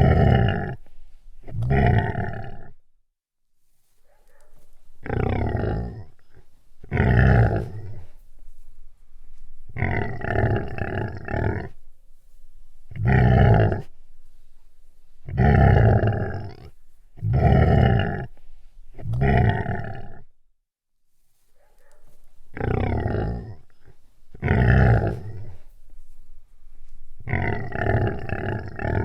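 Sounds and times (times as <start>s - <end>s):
large animal growling: 0.0s - 2.8s, 5.0s - 8.2s, 9.7s - 11.8s, 12.9s - 14.0s, 15.2s - 18.4s, 19.0s - 20.3s, 22.5s - 25.7s, 27.2s - 29.0s.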